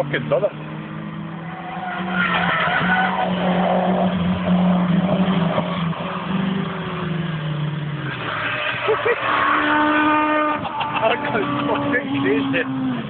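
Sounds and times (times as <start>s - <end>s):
tyres squealing: 1.4s - 4.8s
turbocharged car engine running hard: 4.0s - 13.0s.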